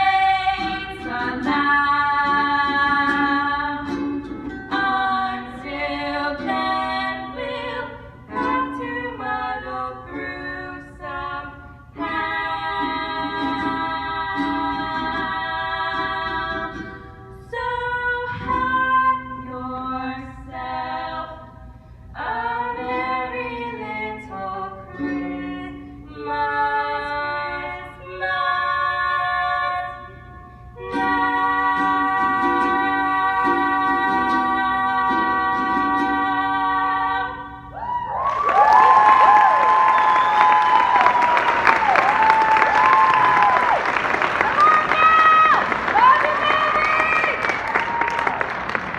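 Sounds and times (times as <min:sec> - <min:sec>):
women singing in harmony: 0:00.0 - 0:38.0.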